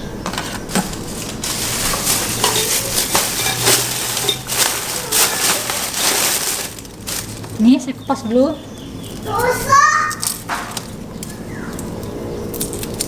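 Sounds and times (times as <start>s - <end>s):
crackly rustling of dry paper: 0.2s - 8.0s.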